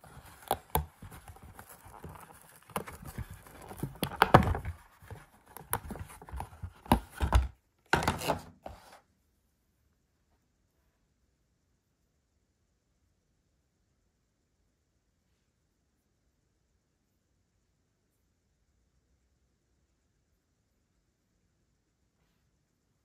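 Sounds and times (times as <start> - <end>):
plastic packaging crinkling: 0.0 - 8.5.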